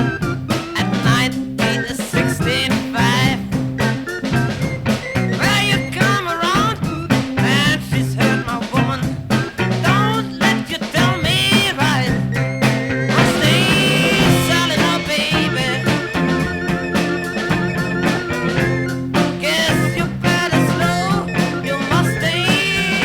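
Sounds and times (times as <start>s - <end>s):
beat band playing a song: 0.0s - 23.0s
drum beat: 0.0s - 23.0s
organ: 0.0s - 23.0s
saxophone: 12.0s - 23.0s.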